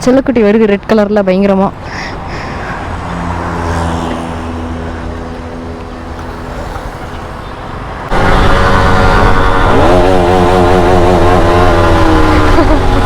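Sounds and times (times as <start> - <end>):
motorcycle engine revving: 3.0 - 13.0.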